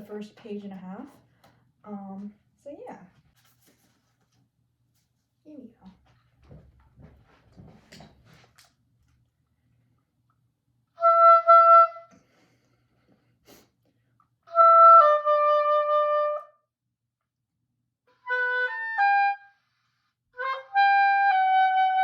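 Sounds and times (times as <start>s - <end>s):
oboe playing: 11.0s - 12.2s, 14.5s - 16.6s, 18.1s - 22.0s.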